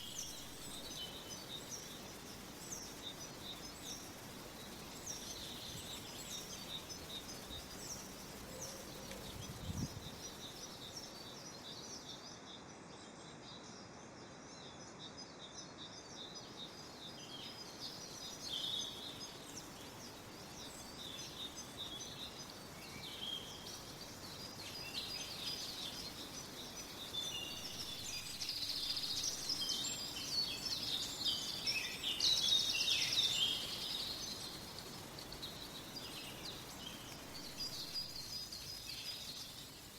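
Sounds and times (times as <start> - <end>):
steady background hiss: 0.0 - 39.9
birds chirping and trilling: 16.3 - 39.9.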